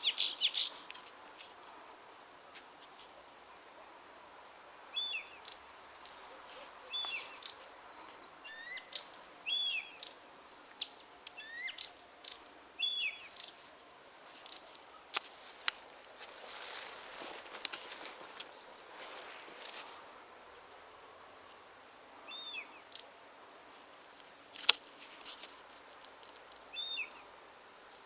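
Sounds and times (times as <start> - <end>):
songbird chirping and whistling: 6.8 - 13.6.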